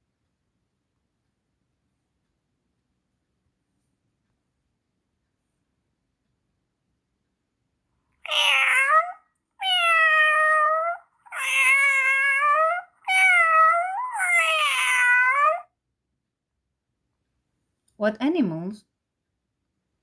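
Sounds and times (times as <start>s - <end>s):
cat meowing: 8.2s - 15.8s.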